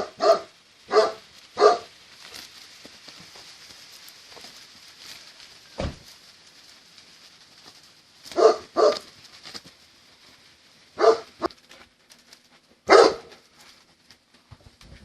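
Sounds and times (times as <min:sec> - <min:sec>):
dog barking: 0:00.0 - 0:01.9, 0:08.3 - 0:09.1, 0:11.0 - 0:11.4, 0:12.9 - 0:13.4.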